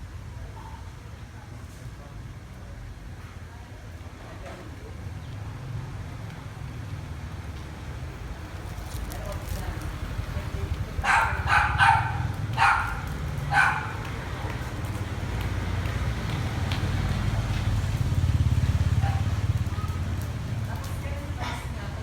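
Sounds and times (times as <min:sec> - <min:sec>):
dog barking: 0:11.0 - 0:14.1, 0:18.9 - 0:20.0.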